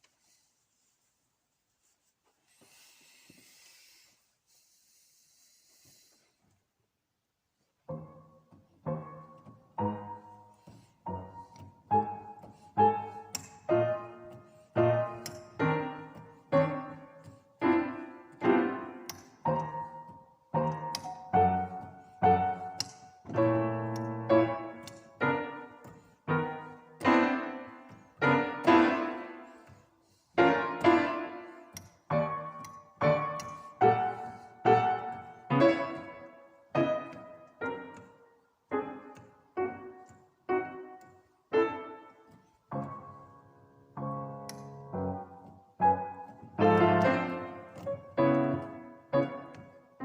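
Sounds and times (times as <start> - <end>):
slow solo piano: 7.8 - 50.0.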